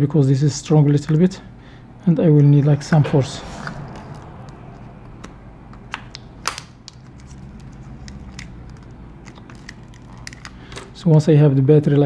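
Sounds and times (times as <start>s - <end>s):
faint low hum: 2.4s - 6.4s.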